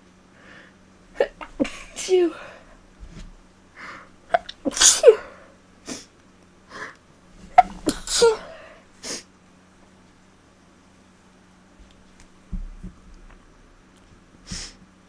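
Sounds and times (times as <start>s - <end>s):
woman sneezing: 1.2s - 2.6s, 4.3s - 6.1s, 7.5s - 9.2s
catching breaths and sniffs: 14.4s - 14.8s.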